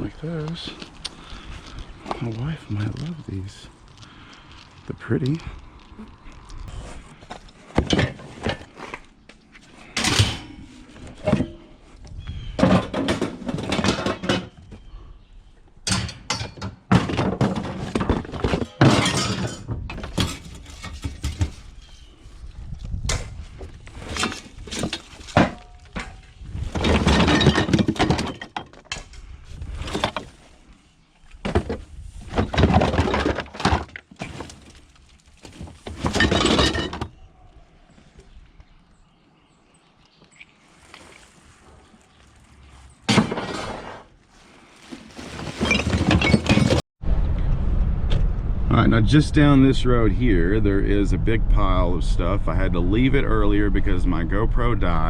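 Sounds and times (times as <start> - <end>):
scrap junk knocking and clattering: 7.7 - 9.0, 9.8 - 11.7, 12.6 - 14.6, 15.8 - 21.8, 23.1 - 29.1, 29.8 - 30.5, 31.4 - 37.2, 43.1 - 44.1, 44.9 - 46.8.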